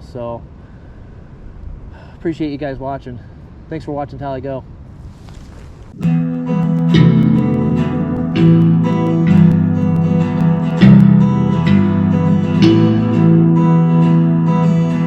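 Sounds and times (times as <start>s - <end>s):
strummed acoustic guitar: 6.0s - 15.0s.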